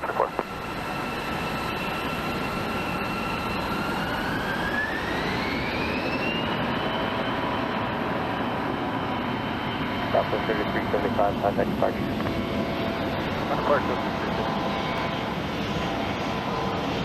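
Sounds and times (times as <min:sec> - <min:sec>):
jet engines spooling up: 0:00.0 - 0:17.0.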